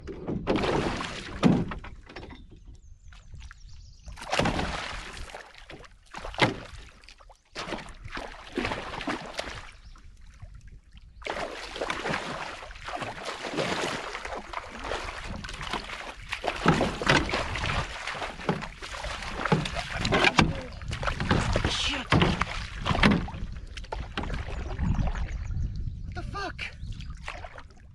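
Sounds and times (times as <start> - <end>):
water splashing around a canoe: 0.0 - 27.9
sharp knocks: 18.2 - 23.4.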